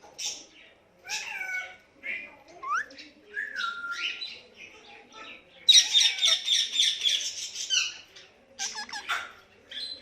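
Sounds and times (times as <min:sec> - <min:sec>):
parakeet squawking: 0:08.6 - 0:09.4.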